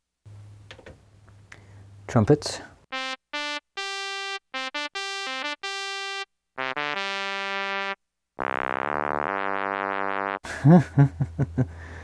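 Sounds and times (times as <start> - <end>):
synth trumpet notes: 2.9 - 10.4.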